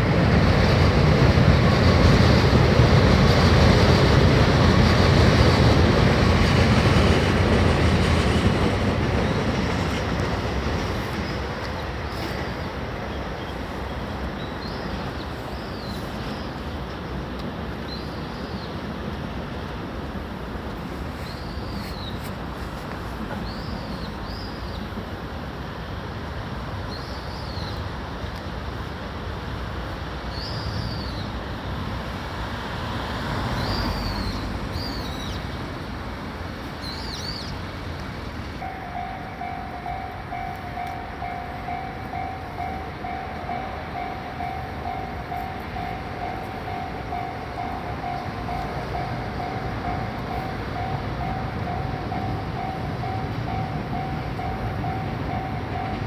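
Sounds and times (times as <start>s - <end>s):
city traffic hum: 0.0s - 56.0s
level crossing warning bell: 38.6s - 56.0s.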